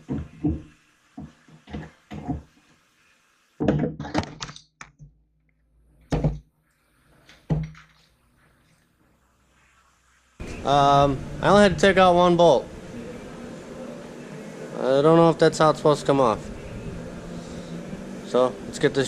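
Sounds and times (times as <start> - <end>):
metal clunks and thuds: 3.6 - 4.4, 6.1 - 6.4.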